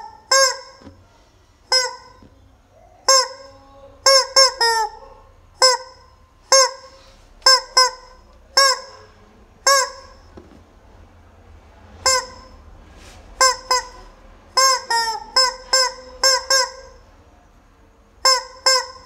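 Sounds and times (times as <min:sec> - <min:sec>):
rubber chicken toy squawking: 0:00.0 - 0:01.0, 0:01.7 - 0:02.3, 0:03.0 - 0:10.3, 0:12.0 - 0:12.6, 0:13.4 - 0:17.0, 0:18.2 - 0:19.0.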